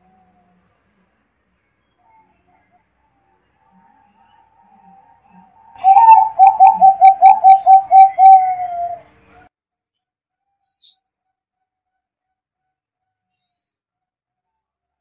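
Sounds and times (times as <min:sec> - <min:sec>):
dove cooing: 0:04.2 - 0:09.1.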